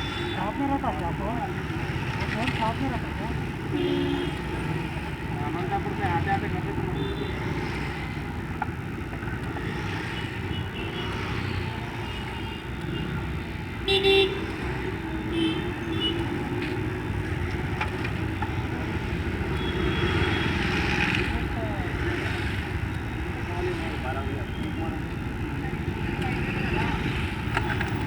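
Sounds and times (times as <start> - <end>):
road traffic rumble: 0.0 - 28.0
vehicle horn honking: 3.7 - 4.4, 13.9 - 14.4.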